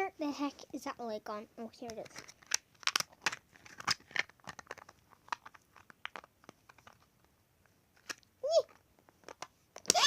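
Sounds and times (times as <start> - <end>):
plastic packaging crinkling: 2.0 - 7.1.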